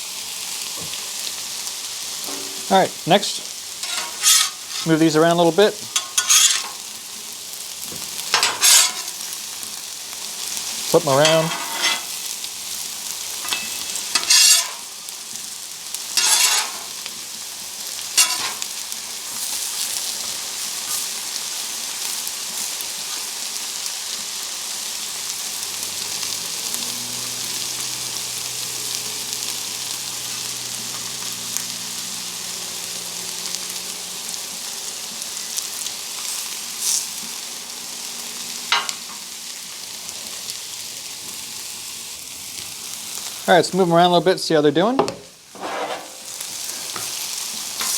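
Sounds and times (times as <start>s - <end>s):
chicken sizzling on griddle: 0.0s - 47.9s
metal spatula scraping: 2.2s - 6.9s, 8.3s - 9.4s, 11.0s - 12.4s, 13.4s - 15.0s, 16.1s - 17.1s, 18.1s - 18.8s, 38.7s - 39.2s, 45.5s - 47.9s.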